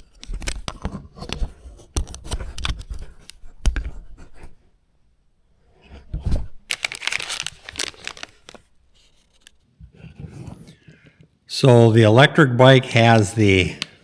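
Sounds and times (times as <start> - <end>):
packaging crinkling and tearing: 0.0 - 3.3, 6.4 - 9.6.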